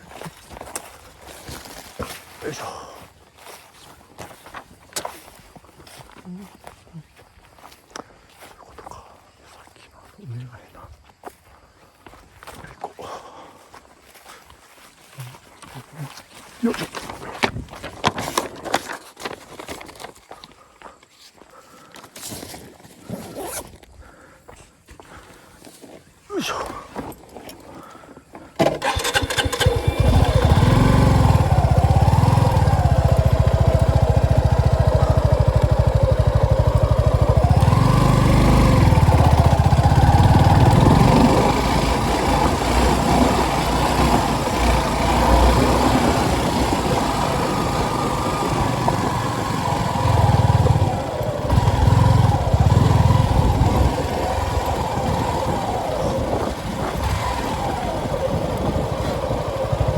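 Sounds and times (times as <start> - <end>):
motorcycle engine revving: 28.6 - 59.9.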